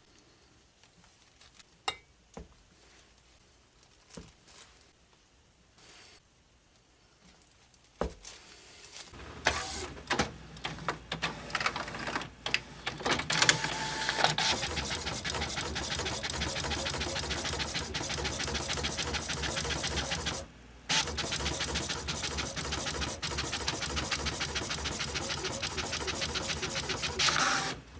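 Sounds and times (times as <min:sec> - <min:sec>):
small motorized machine running: 0:13.3 - 0:27.9.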